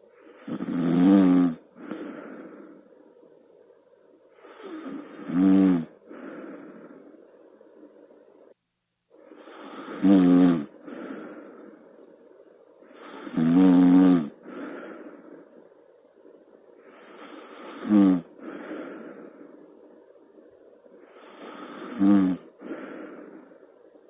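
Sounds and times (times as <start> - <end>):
person snoring: 0.2 - 2.7, 4.4 - 7.0, 9.3 - 11.6, 12.9 - 15.2, 16.9 - 19.3, 21.0 - 23.6
weak breath: 1.8 - 3.1, 6.0 - 8.1, 10.7 - 12.1, 14.3 - 15.8, 16.8 - 20.3, 20.9 - 24.0.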